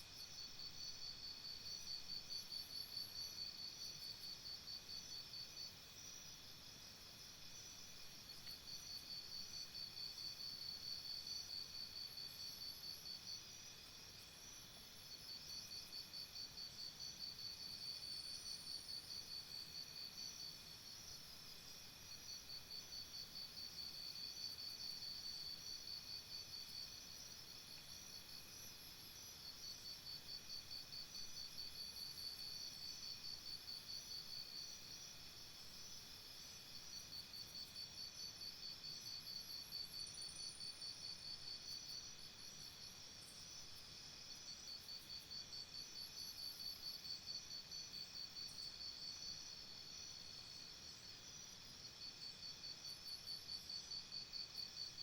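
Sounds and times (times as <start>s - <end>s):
steady high insect tones: 0.1s - 55.0s.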